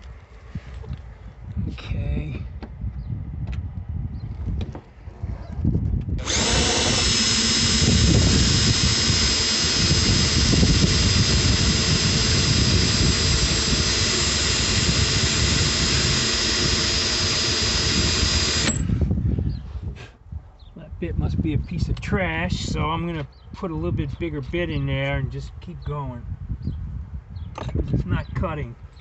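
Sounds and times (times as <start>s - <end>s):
electric drill whining on metal: 6.2s - 19.1s.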